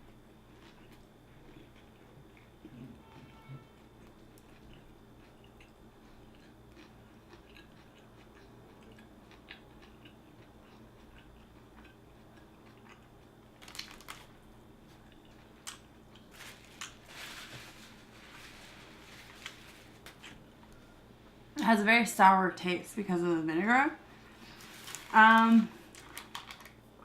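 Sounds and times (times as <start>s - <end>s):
biting and chewing sandwich: 0.0s - 17.1s.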